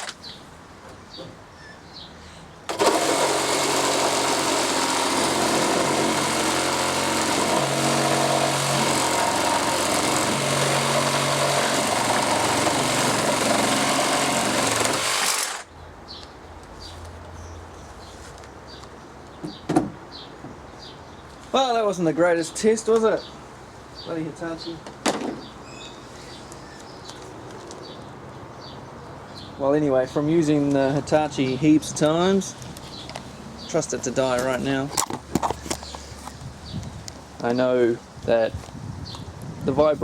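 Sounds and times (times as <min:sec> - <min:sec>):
reciprocating saw cutting: 0:02.7 - 0:15.7.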